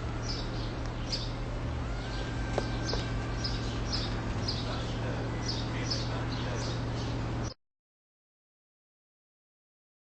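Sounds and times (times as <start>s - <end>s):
small birds chirping: 0.0s - 7.6s
steady low hum: 0.0s - 7.6s.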